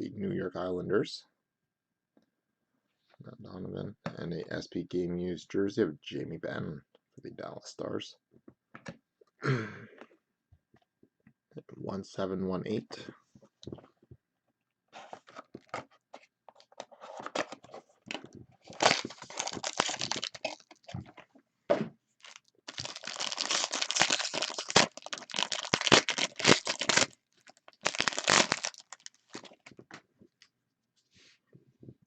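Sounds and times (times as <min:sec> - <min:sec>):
plastic wrapping tearing and crinkling: 0:18.7 - 0:21.2, 0:22.2 - 0:29.7.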